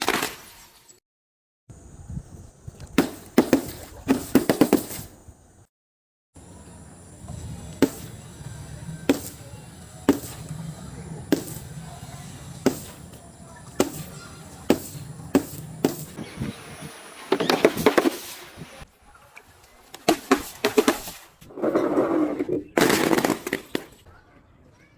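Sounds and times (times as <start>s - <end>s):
sharp cracks of objects breaking: 0.0s - 0.5s.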